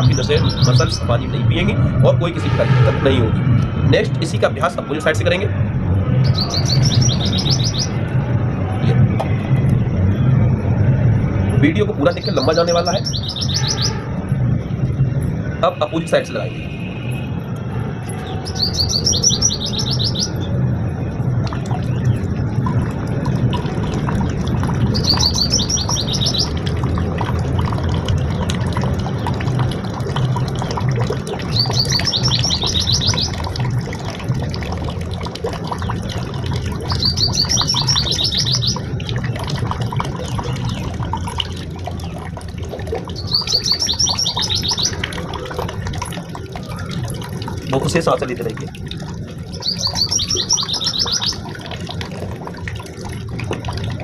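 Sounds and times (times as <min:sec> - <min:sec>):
bird trilling song: 0:00.0 - 0:01.1, 0:06.2 - 0:08.0, 0:12.0 - 0:14.0, 0:18.3 - 0:20.5, 0:24.9 - 0:26.5, 0:31.4 - 0:33.5, 0:36.8 - 0:38.9, 0:43.1 - 0:45.1, 0:49.5 - 0:51.4
steady low rumble: 0:00.0 - 0:15.9, 0:16.6 - 0:47.8.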